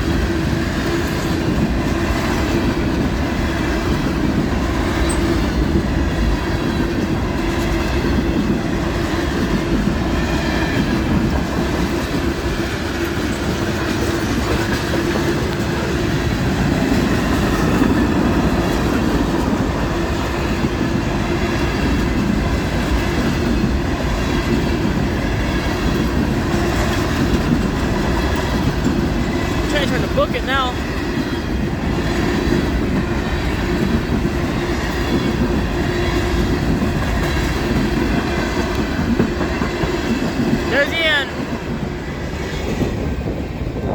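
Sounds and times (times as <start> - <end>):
clickety-clack over track joints: 0.0 - 43.9
train wheels rumbling on rail: 0.0 - 43.9.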